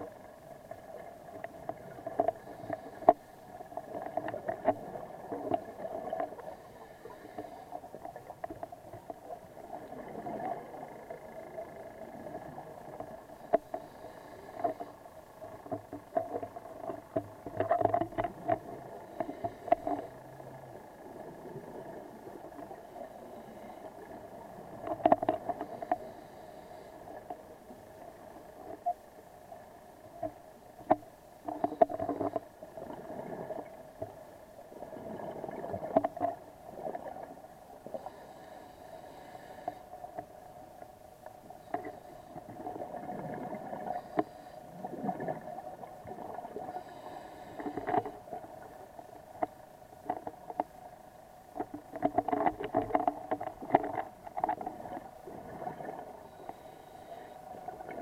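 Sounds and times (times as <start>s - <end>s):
boat engine hum: 10.6s - 32.6s.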